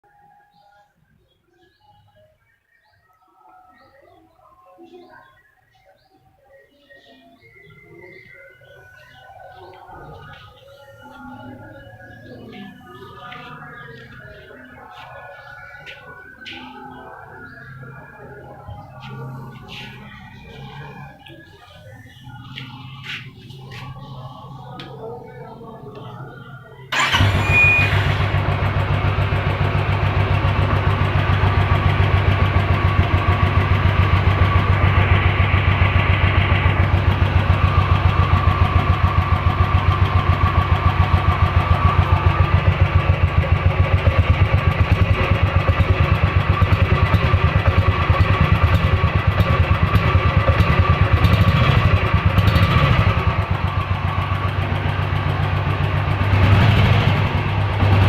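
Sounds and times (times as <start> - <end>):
motorcycle engine idling: 26.9 - 58.0.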